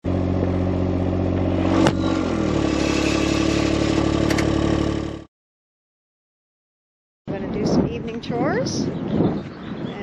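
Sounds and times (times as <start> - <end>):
engine running steadily: 0.0 - 5.3.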